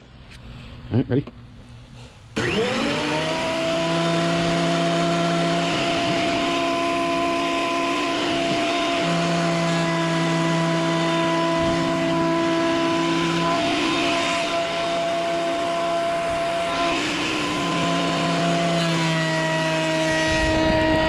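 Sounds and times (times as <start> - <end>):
thickness planer running: 2.4 - 21.0.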